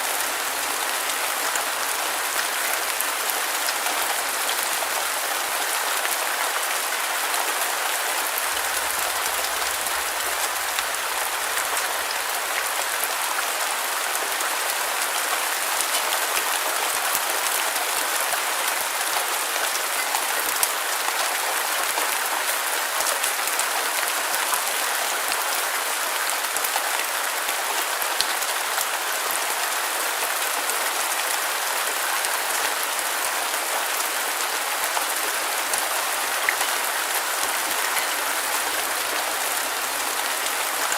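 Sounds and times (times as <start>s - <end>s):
steady rain patter: 0.0s - 40.9s.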